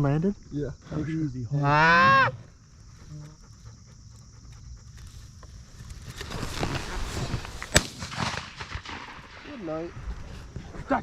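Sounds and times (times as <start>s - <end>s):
faint insect hiss: 0.0s - 11.0s
rustling movement: 4.4s - 9.2s
shotgun shot: 7.6s - 9.9s.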